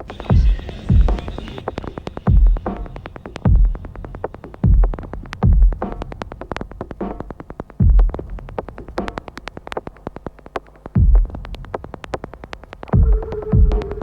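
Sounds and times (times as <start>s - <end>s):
deep bass hits: 0.2s - 6.2s, 13.0s - 14.0s.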